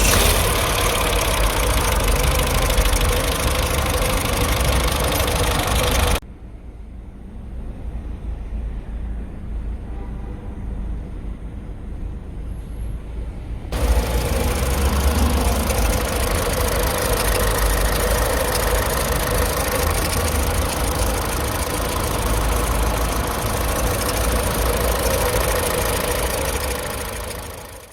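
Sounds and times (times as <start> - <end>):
car engine idling: 0.0 - 6.2, 13.7 - 27.9.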